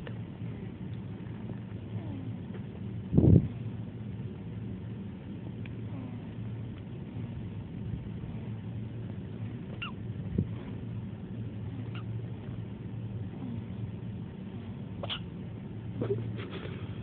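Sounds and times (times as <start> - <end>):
low hum: 0.0 - 17.0
baby hiccuping squeaks: 15.0 - 15.3.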